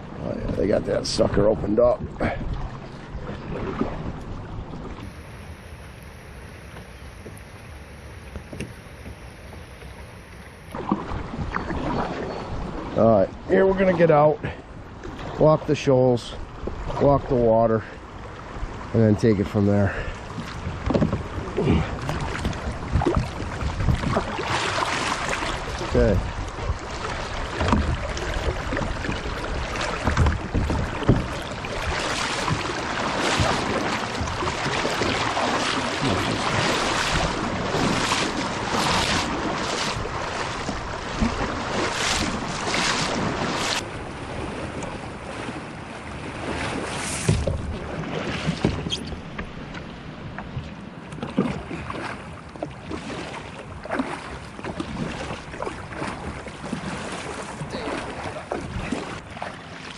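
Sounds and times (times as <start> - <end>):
splashing from wading: 9.6 - 13.0, 19.9 - 49.7, 51.2 - 59.9.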